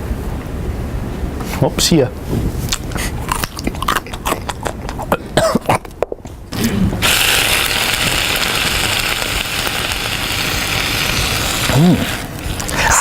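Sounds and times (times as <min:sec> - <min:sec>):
snack crunching: 0:02.7 - 0:09.7, 0:10.8 - 0:13.0
steady hiss: 0:07.0 - 0:13.0.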